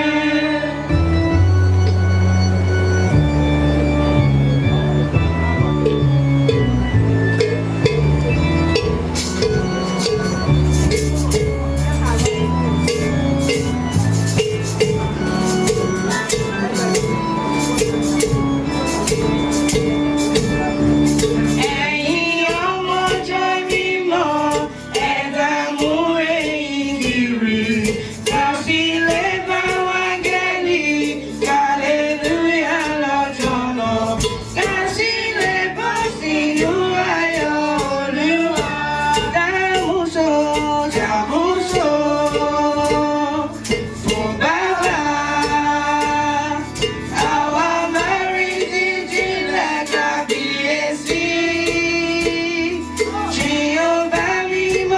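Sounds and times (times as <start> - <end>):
congregation singing a hymn: 0.0 - 2.0, 13.5 - 54.9
backing instrument: 0.0 - 54.9
tambourine beat: 5.7 - 54.9.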